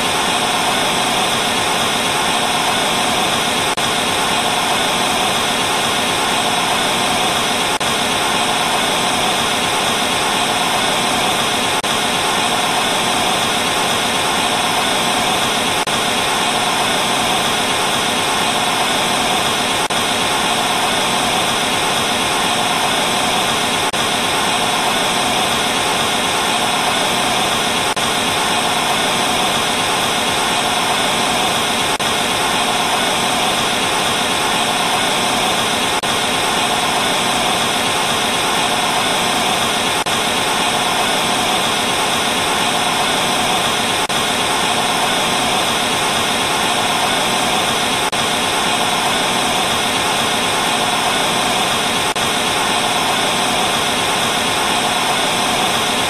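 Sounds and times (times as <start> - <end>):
tv static hiss: 0.0 - 56.0.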